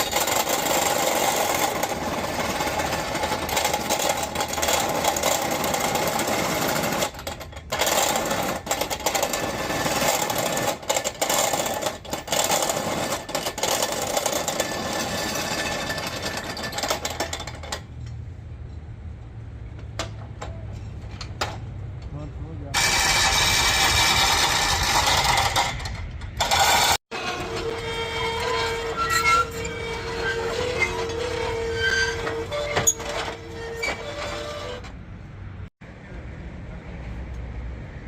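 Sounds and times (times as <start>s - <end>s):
machine rattling: 22.8s - 34.8s.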